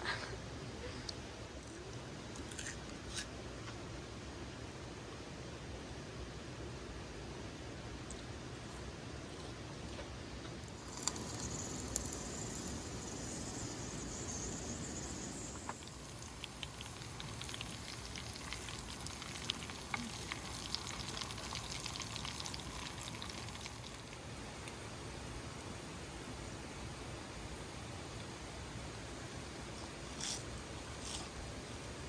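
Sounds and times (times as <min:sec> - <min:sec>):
food frying in hot oil: 0:10.6 - 0:32.0.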